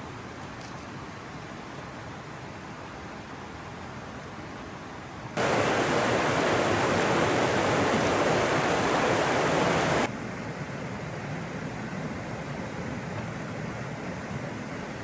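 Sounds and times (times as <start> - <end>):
rushing water roar: 1.4 - 10.1.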